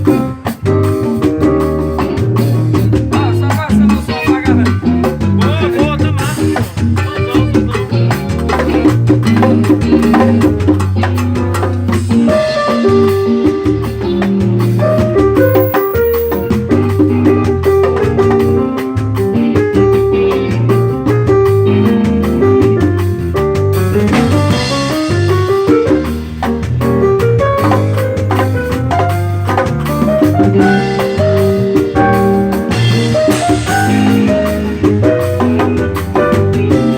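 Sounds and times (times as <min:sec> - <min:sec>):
hand percussion strikes: 0:00.0 - 0:12.4, 0:13.5 - 0:19.2
drum kit: 0:00.0 - 0:36.9
electric bass: 0:00.0 - 0:36.9
guitar: 0:00.0 - 0:36.9
hand percussion: 0:00.0 - 0:36.9
keyboard chords: 0:00.0 - 0:36.9.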